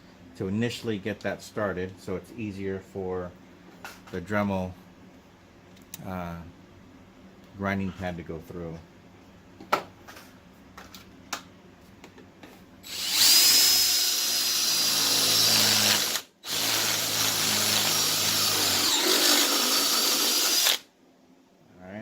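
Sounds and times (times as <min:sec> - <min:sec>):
power drill whining: 0:12.8 - 0:20.8.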